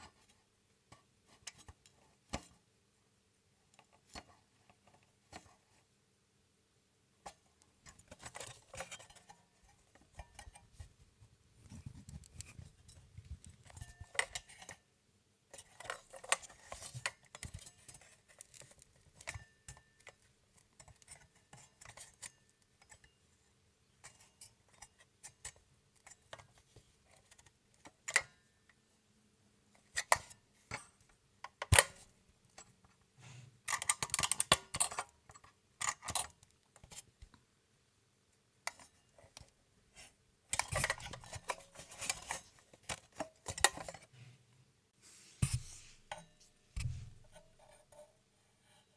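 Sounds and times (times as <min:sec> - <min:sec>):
alarm clock metallic clicks and rattles: 0:33.7 - 0:35.1, 0:35.8 - 0:36.3.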